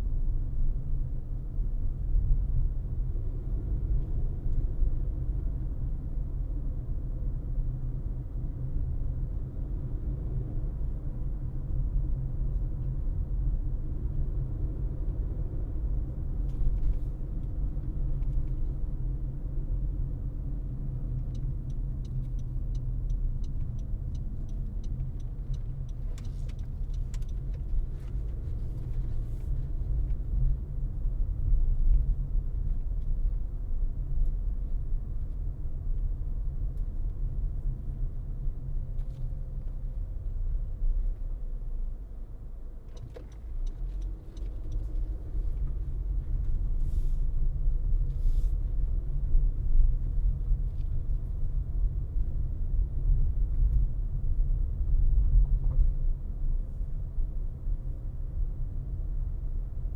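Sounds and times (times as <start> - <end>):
road and engine rumble: 0.0 - 59.9
light ticks: 21.1 - 29.5, 42.9 - 47.1.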